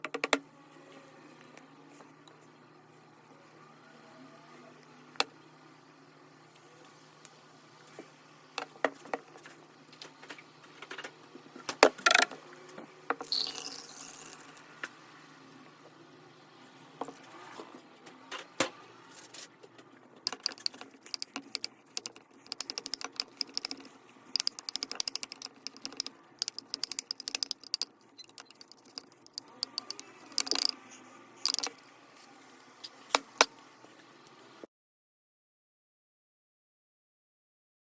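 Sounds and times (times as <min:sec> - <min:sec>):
clicking and crackling of small objects: 0:20.2 - 0:30.8, 0:31.4 - 0:33.5.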